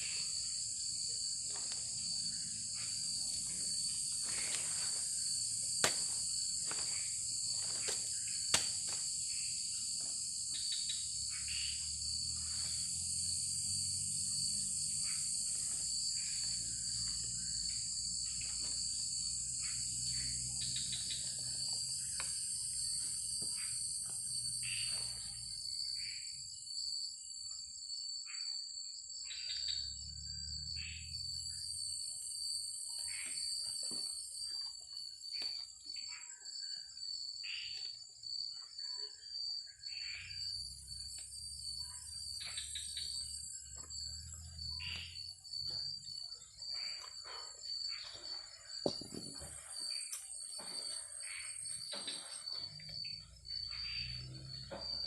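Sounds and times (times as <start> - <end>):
insects chorus: 0.0 - 55.0
small knocks: 48.8 - 49.7.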